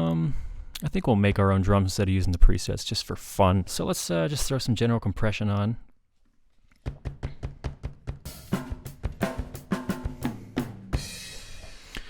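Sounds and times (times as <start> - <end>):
programmed drum kit: 6.8 - 12.0.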